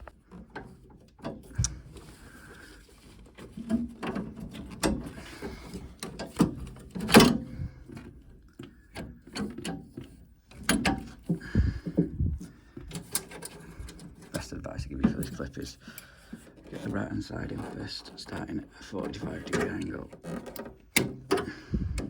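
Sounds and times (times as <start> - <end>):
plastic and metal parts clicking: 12.8 - 14.4, 19.0 - 21.5.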